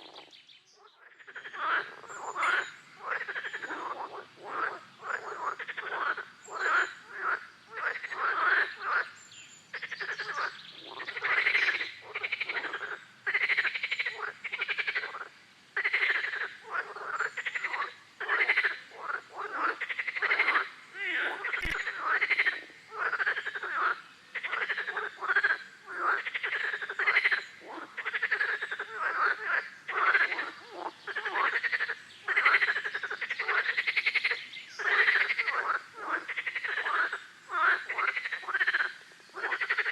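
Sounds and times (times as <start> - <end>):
frogs croaking: 0.0 - 39.9
sharp click: 21.6 - 21.9.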